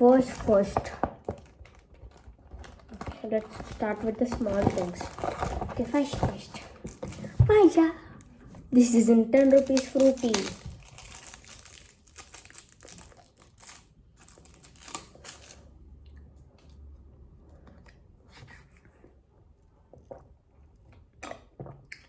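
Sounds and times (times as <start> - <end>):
plastic packaging crinkling: 0.0 - 7.4, 9.3 - 15.7.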